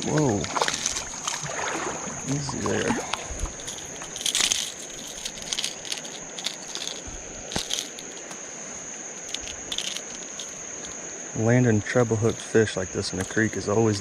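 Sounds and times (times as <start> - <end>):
high-pitched insect trill: 0.0 - 14.0
clicks and crackles of handling: 3.1 - 8.4, 9.2 - 10.9.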